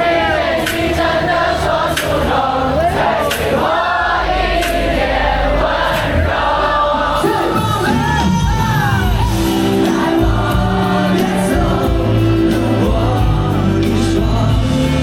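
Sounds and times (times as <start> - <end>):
deep bass line: 0.0 - 15.0
steady drum beat: 0.0 - 15.0
voices singing: 0.0 - 15.0.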